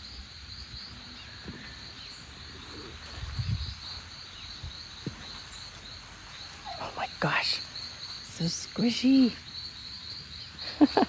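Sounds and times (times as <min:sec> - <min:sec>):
insects trilling: 0:00.0 - 0:11.0
footsteps on soggy ground: 0:02.6 - 0:06.9.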